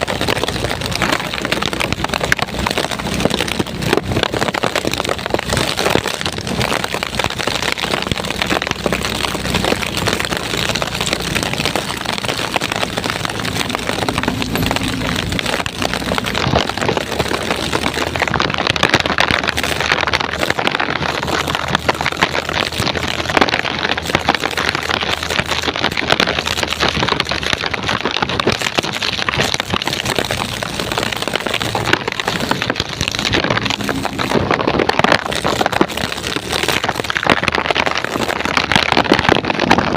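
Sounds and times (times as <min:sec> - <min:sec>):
heavy rain pattering: 0:00.0 - 0:39.9.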